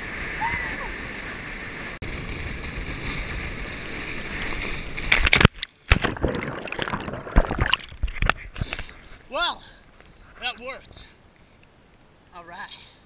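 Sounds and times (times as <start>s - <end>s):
loud water splashes: 5.3s - 8.3s.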